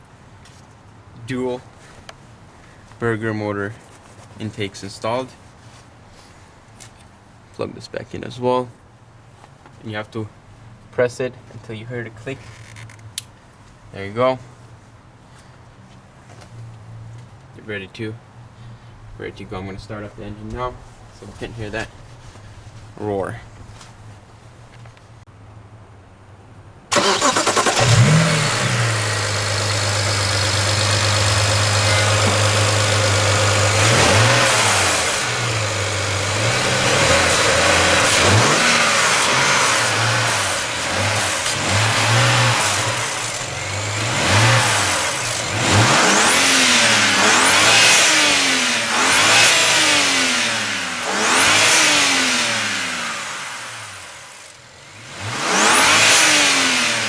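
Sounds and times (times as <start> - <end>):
car engine starting and revving: 26.9 - 57.0.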